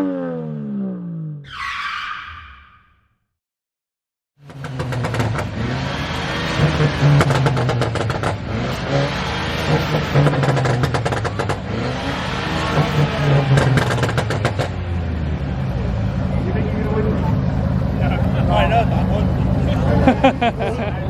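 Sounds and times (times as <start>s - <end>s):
car exhaust revving: 4.4s - 16.5s.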